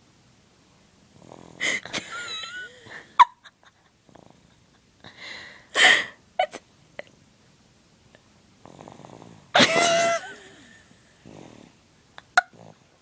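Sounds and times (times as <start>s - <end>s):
person snoring: 1.2s - 2.0s, 10.2s - 11.8s
short snorts: 8.6s - 11.8s.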